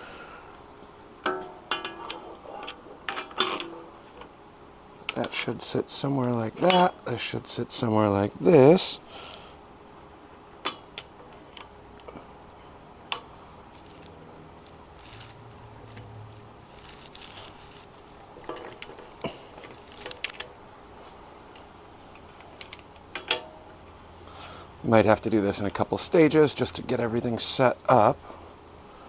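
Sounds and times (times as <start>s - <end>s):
metal pieces clinking: 13.1s - 20.6s.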